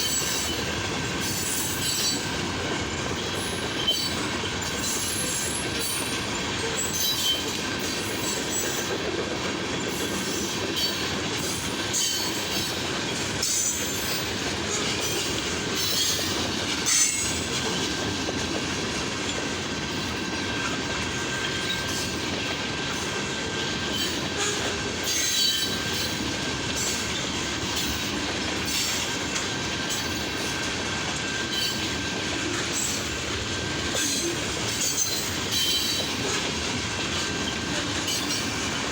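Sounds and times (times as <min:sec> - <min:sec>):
high wheel squeal: 0:00.0 - 0:02.4, 0:03.2 - 0:08.9, 0:23.2 - 0:29.1, 0:31.3 - 0:33.1, 0:34.0 - 0:36.5
train cars rumbling: 0:00.0 - 0:38.9.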